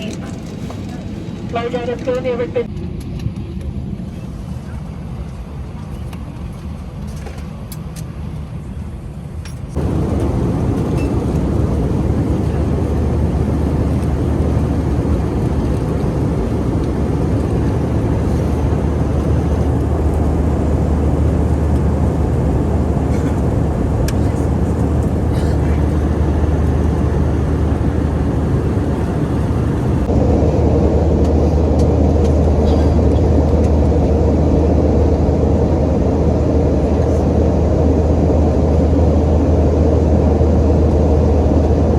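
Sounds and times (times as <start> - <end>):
jet engine roar: 0.0 - 41.9
deep hum: 9.8 - 41.9.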